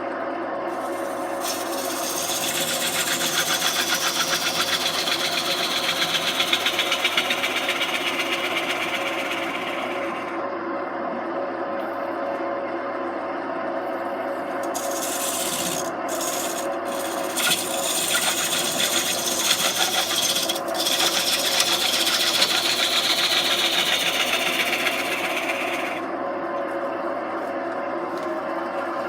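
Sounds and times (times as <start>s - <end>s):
lathe tool scraping wood: 0.7s - 10.4s, 14.6s - 26.1s.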